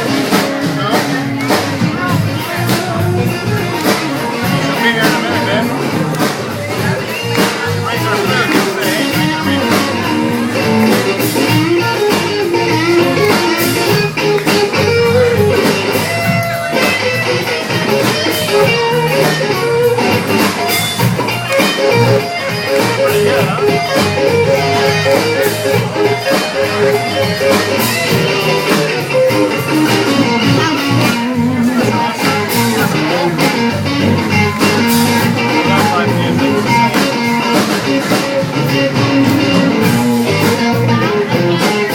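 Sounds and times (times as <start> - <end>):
drums keeping steady beat: 0.0 - 41.9
guitar: 0.0 - 41.9.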